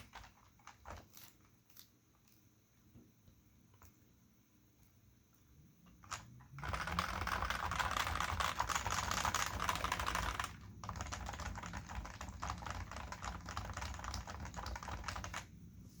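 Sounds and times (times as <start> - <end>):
fast typing on keyboard: 0.0 - 1.3, 6.0 - 15.5.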